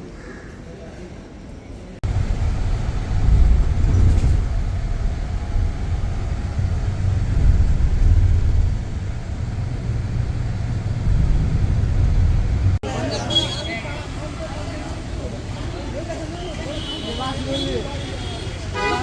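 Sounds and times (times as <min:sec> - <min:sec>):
vehicle engine low rumble: 0:02.0 - 0:12.8.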